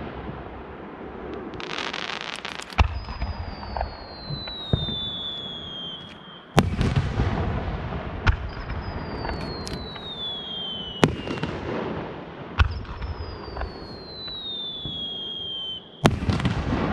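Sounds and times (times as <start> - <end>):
fireworks bursting: 0.0 - 16.9
firework whistle sliding down: 1.6 - 6.6, 8.6 - 11.5, 12.7 - 16.1.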